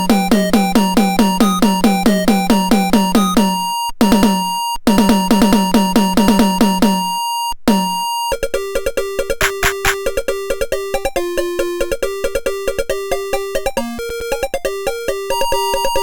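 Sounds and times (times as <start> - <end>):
electronic toy music: 7.8 - 16.0
drum-machine beat: 9.4 - 10.1.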